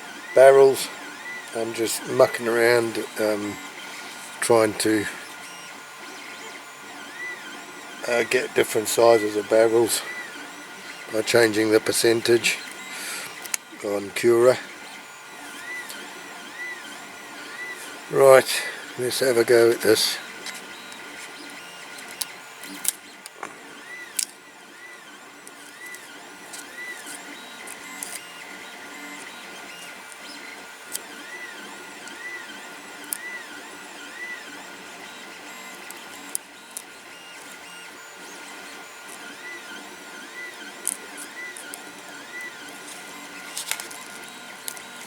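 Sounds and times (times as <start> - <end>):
steady mechanical hum: 0.0 - 45.0
stepper motors whining: 0.0 - 45.0
sharp clicks: 12.6 - 13.7.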